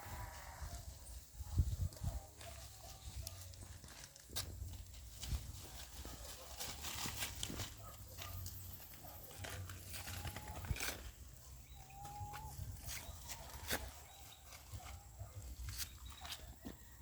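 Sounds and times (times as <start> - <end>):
goat hooves clicking: 2.4 - 11.0.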